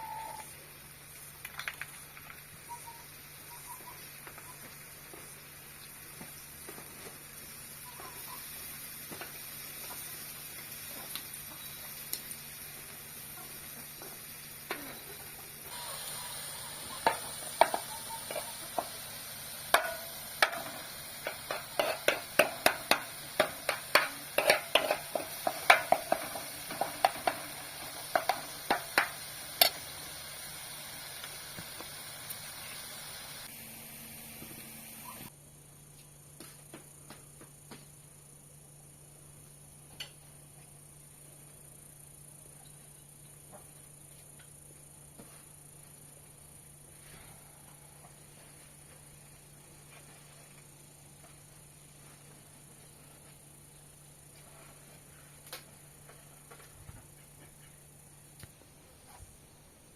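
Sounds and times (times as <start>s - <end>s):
faint steady hiss: 0.0s - 59.9s
utensil clinking against a pan: 17.0s - 18.9s, 19.7s - 29.8s.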